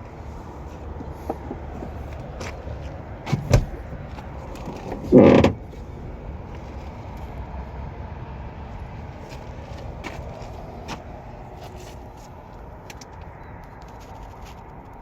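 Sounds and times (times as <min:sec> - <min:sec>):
car door latch clicks: 0:03.3 - 0:03.8, 0:04.7 - 0:05.6.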